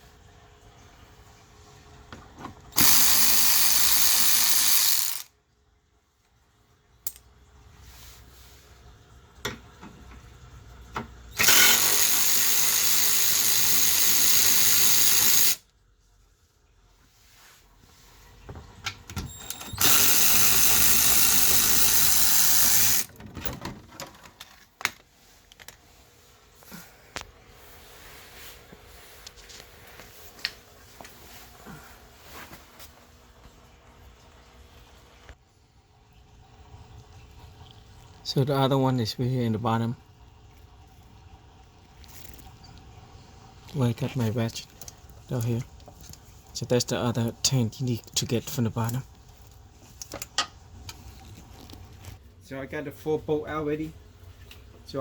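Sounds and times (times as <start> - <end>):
power tool spinning bolts: 2.8 - 5.3, 11.4 - 15.6, 19.4 - 23.1
tools and parts clattering: 22.7 - 25.8.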